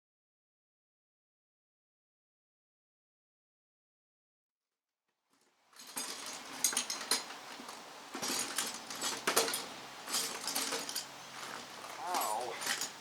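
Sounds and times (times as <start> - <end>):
small metal parts clinking: 5.8 - 13.0.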